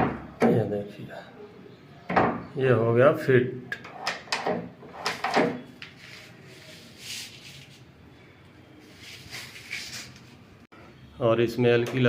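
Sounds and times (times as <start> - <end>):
soft rubbing handling noise: 5.6 - 8.0, 8.8 - 10.6.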